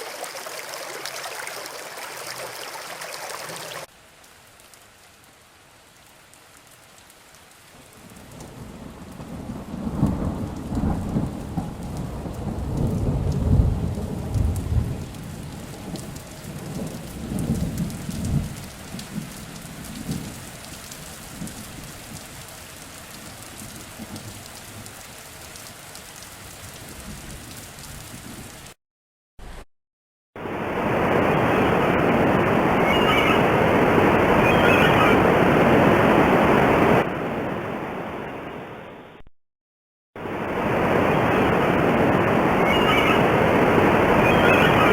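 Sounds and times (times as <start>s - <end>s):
steady rain: 0.0s - 28.8s, 30.4s - 39.2s, 40.2s - 44.9s
thunder rumbling: 8.3s - 20.4s, 30.4s - 38.2s, 40.2s - 44.9s.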